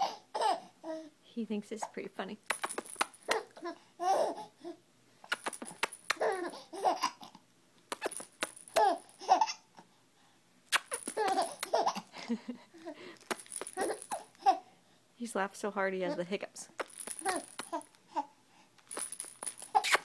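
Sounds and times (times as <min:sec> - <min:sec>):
baby laughing: 0:06.1 - 0:07.3, 0:08.7 - 0:09.6, 0:10.9 - 0:13.0, 0:13.8 - 0:14.7, 0:19.7 - 0:20.0.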